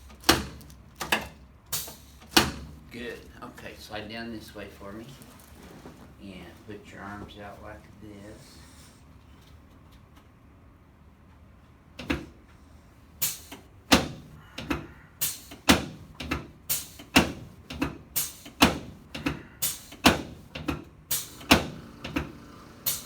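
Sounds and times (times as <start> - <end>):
sharp clicking knocks: 13.2 - 23.0.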